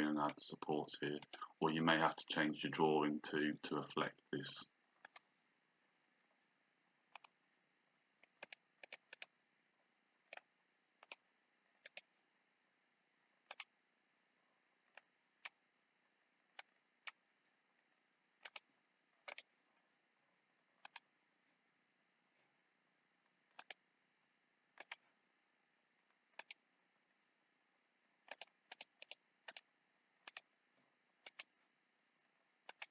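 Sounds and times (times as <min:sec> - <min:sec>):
computer mouse clicks: 0:01.2 - 0:01.4, 0:05.0 - 0:05.3, 0:07.1 - 0:07.4, 0:08.2 - 0:09.4, 0:10.2 - 0:12.2, 0:13.4 - 0:13.8, 0:14.9 - 0:15.6, 0:16.5 - 0:17.3, 0:18.4 - 0:19.5, 0:20.8 - 0:21.1, 0:23.5 - 0:23.8, 0:24.7 - 0:25.2, 0:26.1 - 0:26.7, 0:28.2 - 0:30.6, 0:31.2 - 0:31.6, 0:32.6 - 0:32.9.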